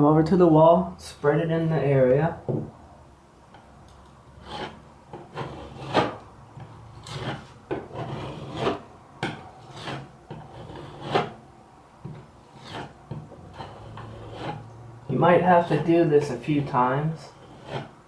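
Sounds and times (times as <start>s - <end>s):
spatula scraping filler on wall: 4.3s - 11.4s, 12.0s - 18.0s.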